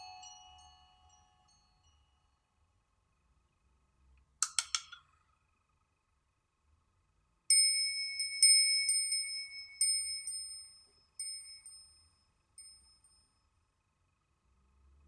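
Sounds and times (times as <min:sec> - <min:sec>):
bell-like ringtone chime: 0:00.0 - 0:02.3.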